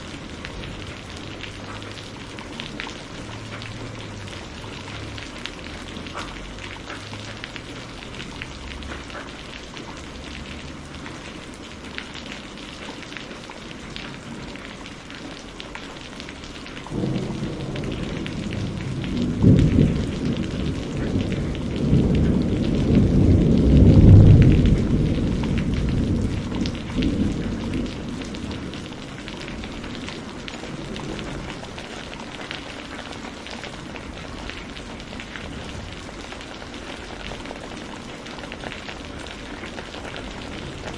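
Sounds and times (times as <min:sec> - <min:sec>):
low rolling thunder: 0:00.0 - 0:06.6, 0:16.6 - 0:40.9
steady rain: 0:00.0 - 0:40.9.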